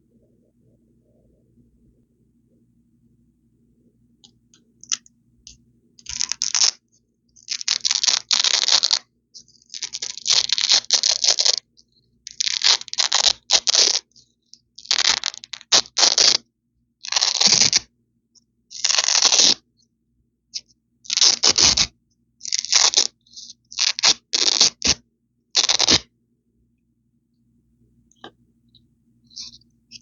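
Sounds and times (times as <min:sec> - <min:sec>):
velcro strips ripping: 0:06.1 - 0:06.8, 0:07.4 - 0:09.0, 0:09.7 - 0:11.6, 0:12.3 - 0:14.1, 0:14.8 - 0:16.4, 0:17.1 - 0:17.9, 0:18.8 - 0:19.6, 0:21.1 - 0:25.0, 0:25.6 - 0:26.1.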